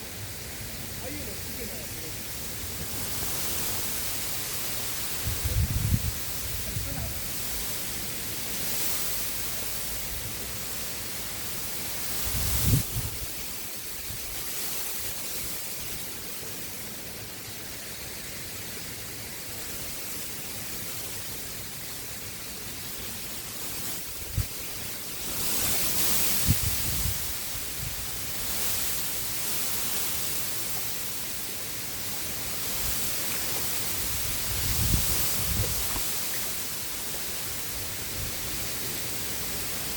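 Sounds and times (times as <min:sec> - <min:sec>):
steady hiss: 0:00.0 - 0:39.9
low rumbling wind buffets: 0:01.0 - 0:08.0, 0:12.2 - 0:15.2, 0:26.3 - 0:28.4, 0:33.8 - 0:36.2
gusty wind on microphone: 0:02.5 - 0:07.8, 0:12.1 - 0:15.2, 0:24.1 - 0:24.7, 0:25.3 - 0:28.9, 0:32.7 - 0:36.6.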